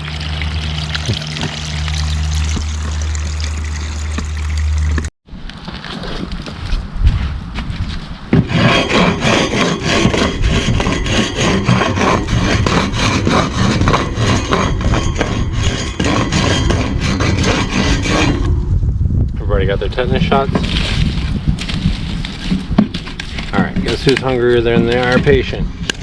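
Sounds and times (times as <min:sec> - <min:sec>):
hand tool rasping strokes: 0:08.4 - 0:18.6, 0:23.0 - 0:26.0.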